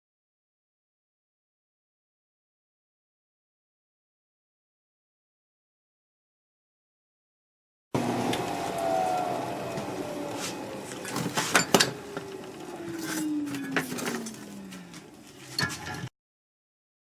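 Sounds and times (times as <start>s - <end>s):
lathe motor winding down: 8.0s - 15.2s.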